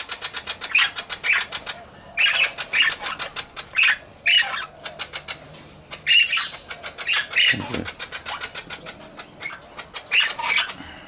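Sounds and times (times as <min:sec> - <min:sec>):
baby parrots begging chatter: 0:00.2 - 0:10.8.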